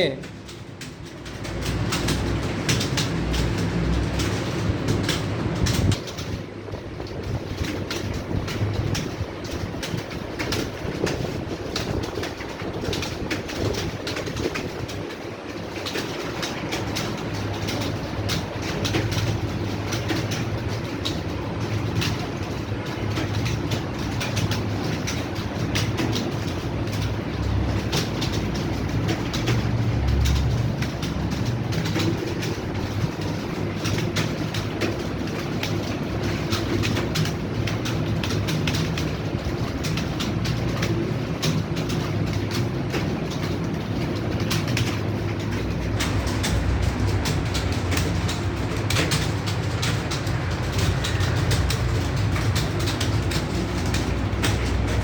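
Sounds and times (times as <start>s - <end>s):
keyboards clattering: 0.0s - 55.0s
steady low hum: 25.4s - 55.0s.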